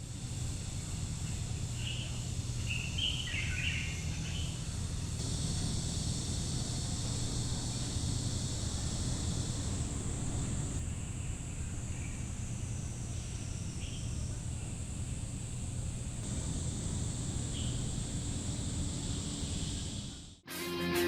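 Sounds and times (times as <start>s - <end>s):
low steady hum: 5.2s - 12.0s, 13.3s - 20.4s
high insect drone: 5.2s - 20.4s.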